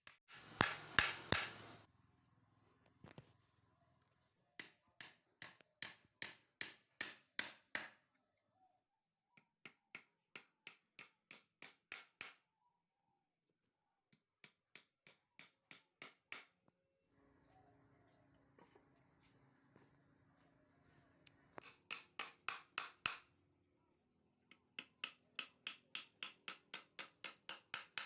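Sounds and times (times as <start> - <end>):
hammer striking wood: 0.3 - 1.7, 4.6 - 8.0, 21.6 - 23.3, 24.8 - 28.0.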